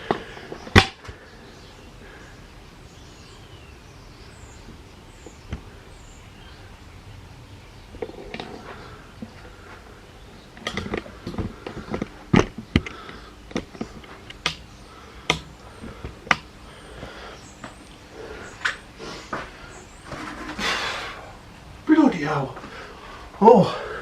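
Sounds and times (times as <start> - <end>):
hard objects clicking and knocking: 10.5 - 16.5.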